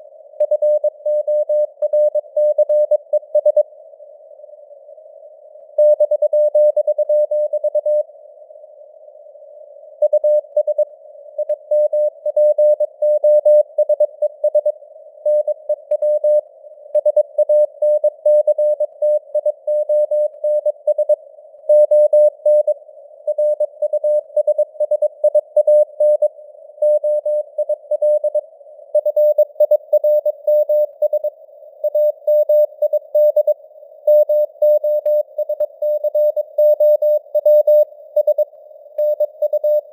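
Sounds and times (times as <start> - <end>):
morse code tone: 39.0 - 39.9.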